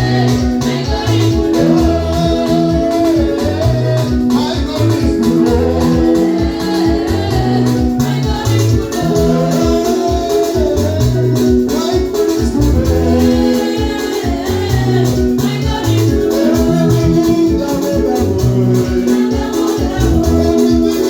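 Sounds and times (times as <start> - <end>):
person singing: 0.0 - 21.0
upbeat praise music: 0.0 - 21.0.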